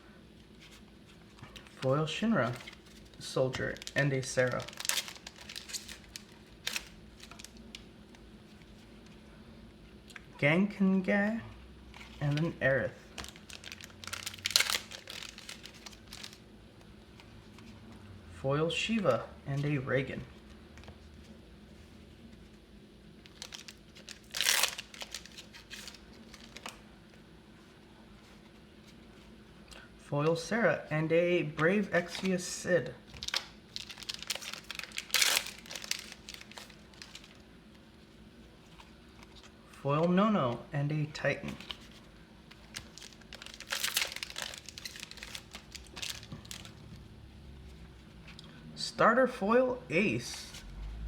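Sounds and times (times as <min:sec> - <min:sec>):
foil wrapper tearing and crinkling: 0:02.6 - 0:07.6, 0:13.1 - 0:16.4, 0:23.2 - 0:26.8, 0:33.1 - 0:37.4, 0:42.5 - 0:46.8.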